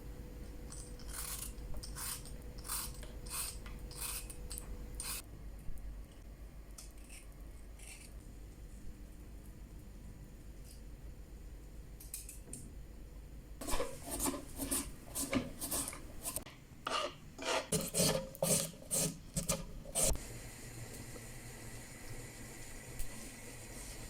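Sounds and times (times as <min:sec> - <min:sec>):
quick rasping scrapes: 0:13.6 - 0:20.2.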